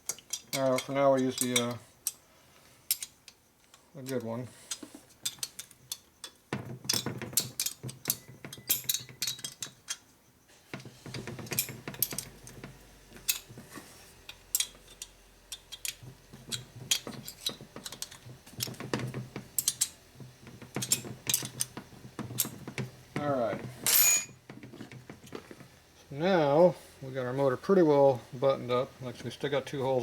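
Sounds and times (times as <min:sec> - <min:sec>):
hand tools clicking on metal: 0:00.0 - 0:02.2, 0:02.8 - 0:10.1, 0:10.8 - 0:13.6, 0:14.2 - 0:25.7.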